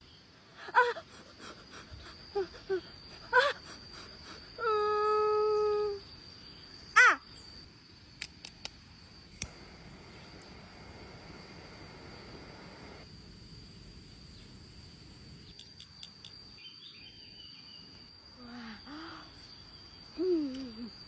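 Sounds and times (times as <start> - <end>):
high insect trill: 0.0 - 21.0
sharp clicks: 8.2 - 8.8.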